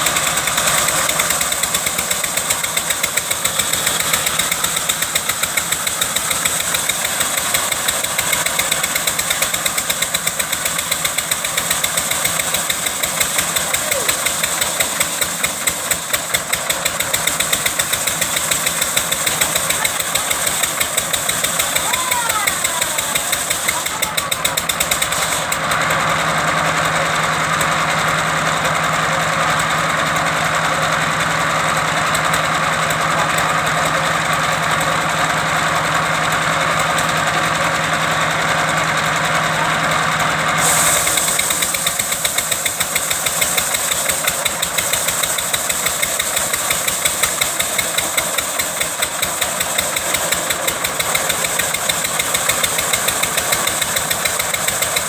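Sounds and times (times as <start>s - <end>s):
rasping cutting noise: 0.0s - 25.6s
engine chugging: 0.0s - 55.0s.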